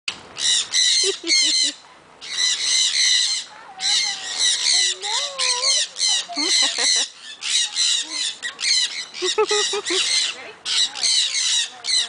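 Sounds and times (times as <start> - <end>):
parrots screeching: 0.4 - 12.0.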